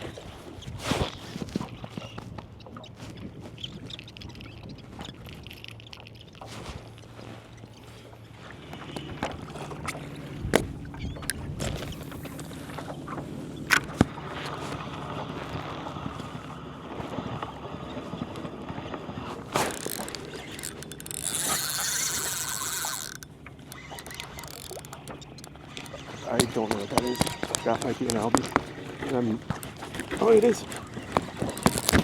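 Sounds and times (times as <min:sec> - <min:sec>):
water sloshing around kayak hull: 0:00.0 - 0:32.0
sharp knocks and clicks: 0:19.6 - 0:32.0.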